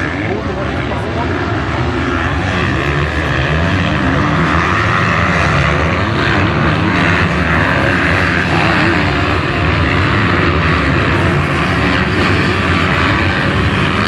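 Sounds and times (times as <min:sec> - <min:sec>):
motocross bikes revving loudly: 0:00.0 - 0:14.0.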